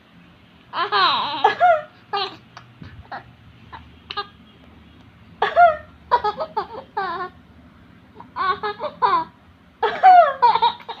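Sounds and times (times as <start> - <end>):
baby laughing: 0.7 - 4.4, 5.4 - 7.4, 8.2 - 11.0.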